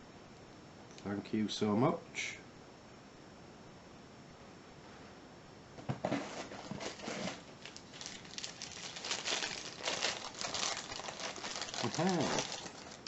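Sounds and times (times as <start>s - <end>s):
packaging crinkling: 6.1s - 13.0s.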